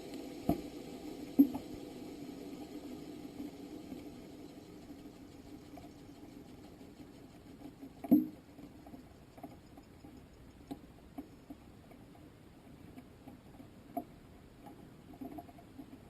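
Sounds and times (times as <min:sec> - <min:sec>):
faint clicks and taps: 0:03.4 - 0:16.0.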